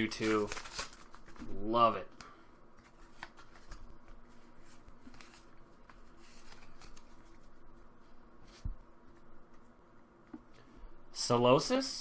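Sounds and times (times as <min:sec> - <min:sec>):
trading cards rustling: 0:00.0 - 0:02.0, 0:02.8 - 0:07.6.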